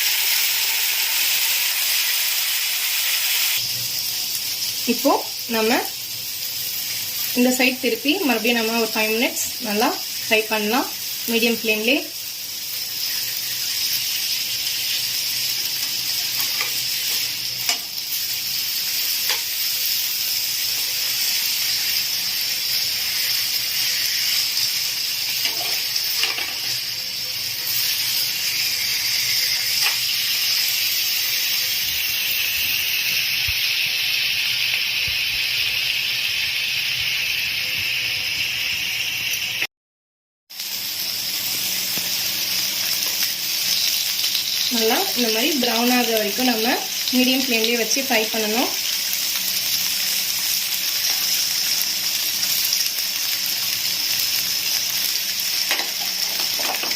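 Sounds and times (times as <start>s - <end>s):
chicken sizzling in a pan: 0.0s - 39.7s, 40.5s - 56.9s.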